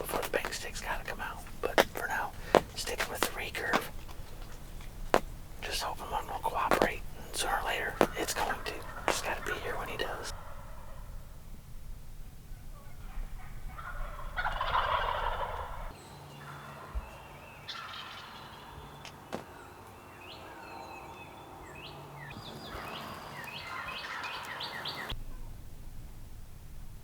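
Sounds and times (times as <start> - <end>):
turkey gobbling: 0.0 - 11.0, 13.0 - 16.0, 17.7 - 18.7, 22.4 - 25.2.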